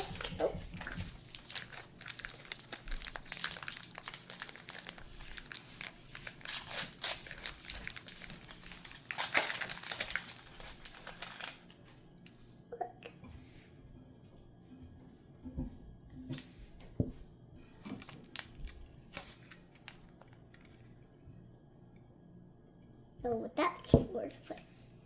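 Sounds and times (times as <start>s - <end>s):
wrapping crumpling and tearing: 0.0s - 12.4s, 17.9s - 20.9s.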